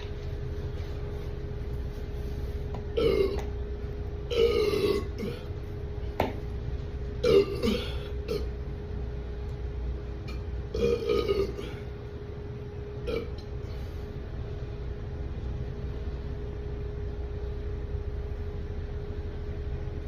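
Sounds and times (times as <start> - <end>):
steady hum: 0.0 - 20.0
man burping: 3.0 - 3.5, 4.3 - 5.5, 7.2 - 8.5, 10.7 - 11.9, 13.0 - 13.4.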